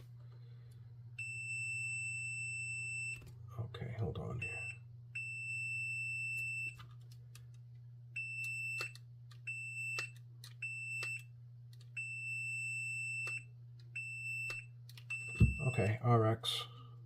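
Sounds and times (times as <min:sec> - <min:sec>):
steady low hum: 0:00.0 - 0:17.0
multimeter continuity beeps: 0:01.2 - 0:03.2, 0:04.2 - 0:06.8, 0:08.1 - 0:16.0.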